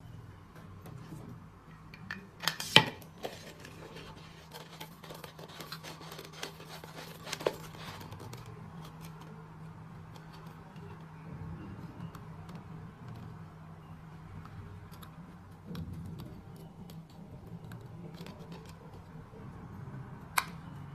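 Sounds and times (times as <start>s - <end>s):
steady low hum: 3.1s - 20.9s.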